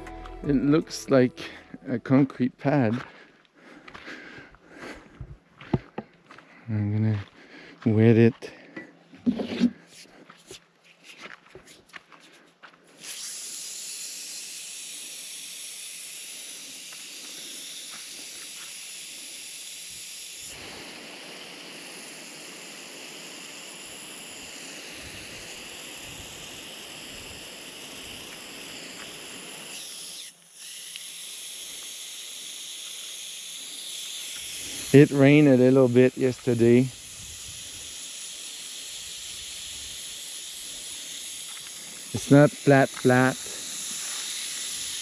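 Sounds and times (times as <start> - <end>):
hose spray hissing onto concrete: 13.0 - 45.0.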